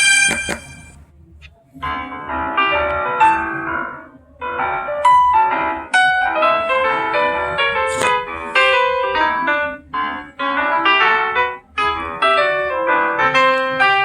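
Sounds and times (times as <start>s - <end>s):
phone ringtone melody: 0.0s - 1.0s.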